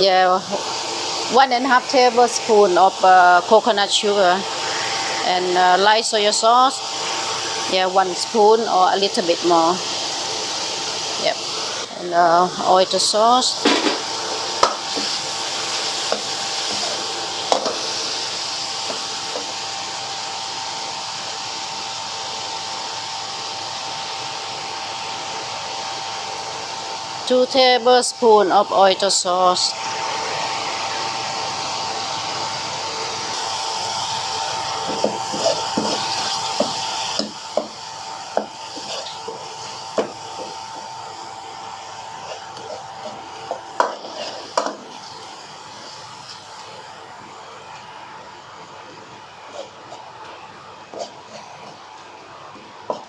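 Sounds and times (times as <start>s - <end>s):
food sizzling in a wok: 0.0s - 32.7s, 33.3s - 53.0s
spatula scraping a wok: 16.0s - 17.8s, 38.4s - 40.6s, 42.2s - 45.2s, 50.9s - 51.8s
metal spatula scraping a wok: 38.8s - 39.3s, 43.8s - 44.8s.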